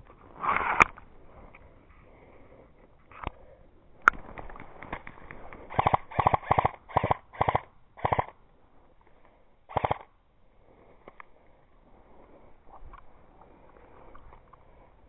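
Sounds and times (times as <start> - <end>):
airsoft gun full-auto bursts: 5.7 - 8.4, 9.7 - 10.1.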